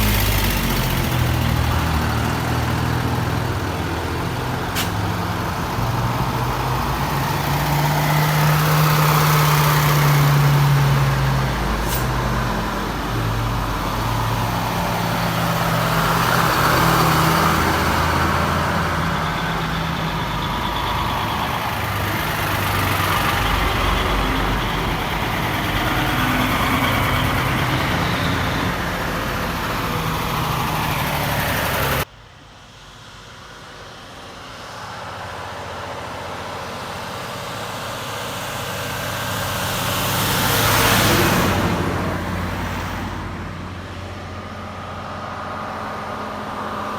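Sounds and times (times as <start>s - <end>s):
truck engine running: 0.0s - 32.4s
truck approaching and passing: 0.0s - 46.9s.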